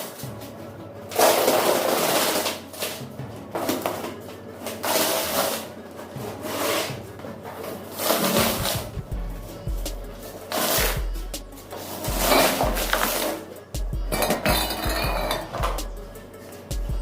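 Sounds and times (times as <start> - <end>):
hand tool rasping over surface: 4.6 - 13.4.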